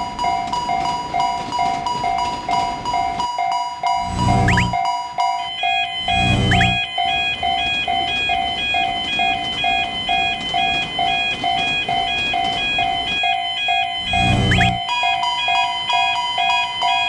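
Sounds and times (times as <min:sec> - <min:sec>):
railroad crossing bell clanging: 0:00.0 - 0:04.1, 0:14.8 - 0:17.0.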